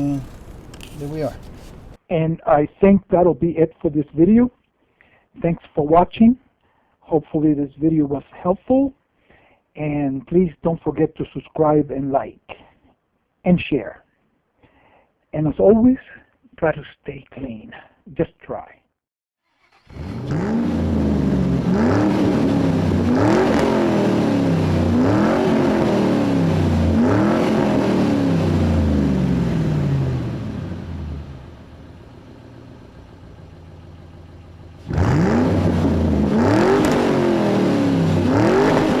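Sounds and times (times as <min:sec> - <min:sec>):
car engine revving: 0:00.0 - 0:02.0, 0:19.6 - 0:39.0.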